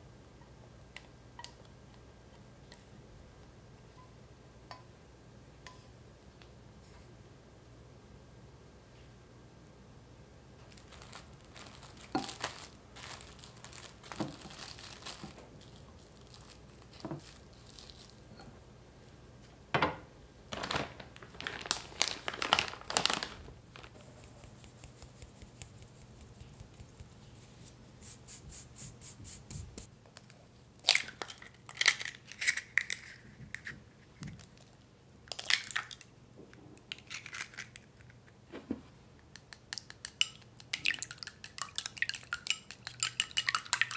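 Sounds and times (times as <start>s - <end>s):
crinkling and tearing: 10.6s - 18.2s, 20.5s - 27.2s.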